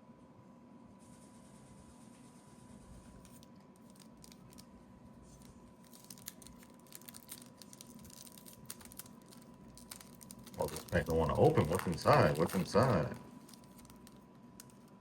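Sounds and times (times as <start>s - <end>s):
foil wrapper crinkling and tearing: 3.2s - 15.0s.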